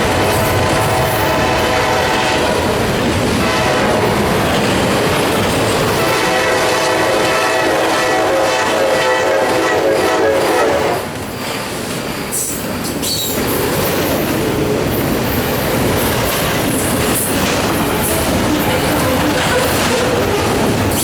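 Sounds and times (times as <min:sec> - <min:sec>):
train wheels rumbling on rails: 0:00.0 - 0:21.0
locomotive air horn chord: 0:00.1 - 0:02.7, 0:03.4 - 0:04.3, 0:06.0 - 0:11.1.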